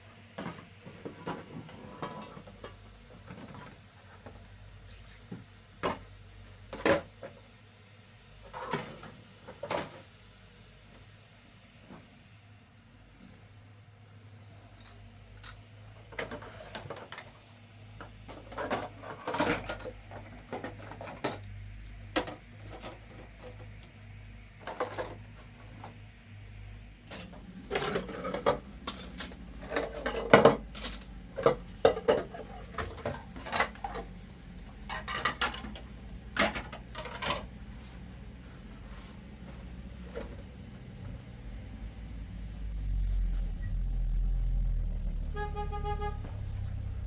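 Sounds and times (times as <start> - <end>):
steady low hum: 25.0 - 47.0.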